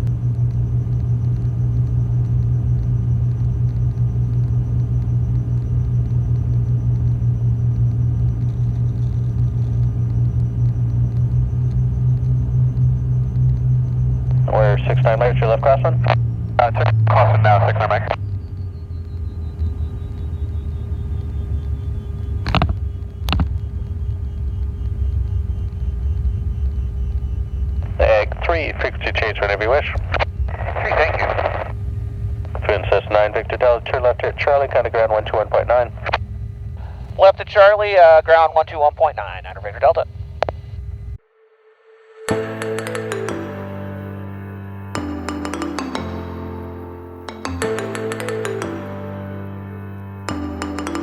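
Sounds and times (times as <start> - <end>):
thin steady hum: 0.0 - 42.4
airplane engines droning: 0.0 - 51.0.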